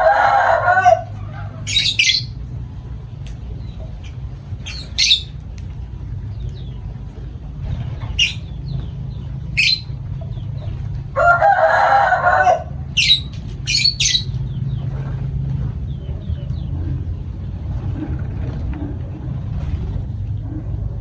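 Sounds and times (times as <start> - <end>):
lovebirds shrieking: 0.0 - 2.5, 3.5 - 5.5, 7.7 - 15.1
low steady hum: 0.0 - 21.0.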